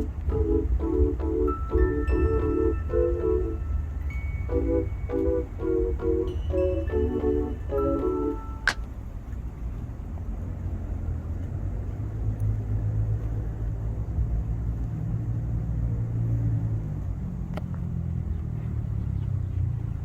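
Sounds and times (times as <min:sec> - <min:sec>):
vehicle engine rumbling: 0:00.0 - 0:20.0.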